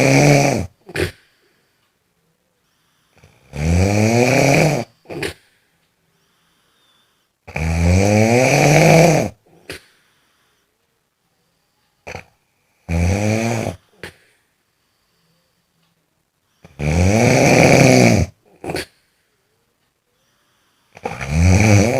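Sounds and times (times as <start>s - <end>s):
loud snores: 0.0s - 1.3s, 3.1s - 5.5s, 7.4s - 10.0s, 12.0s - 14.2s, 16.6s - 19.0s, 20.9s - 21.9s.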